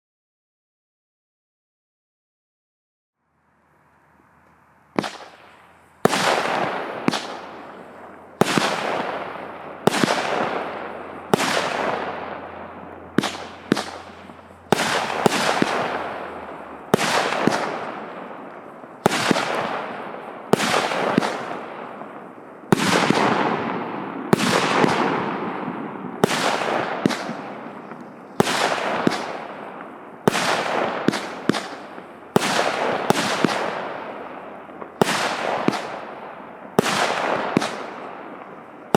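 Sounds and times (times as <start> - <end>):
fireworks hissing: 3.7 - 23.6
fireworks bangs: 4.8 - 38.9.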